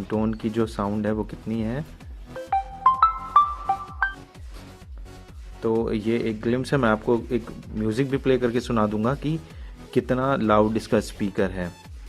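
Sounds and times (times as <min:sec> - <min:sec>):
electronic ringtone melody: 0:02.4 - 0:04.3.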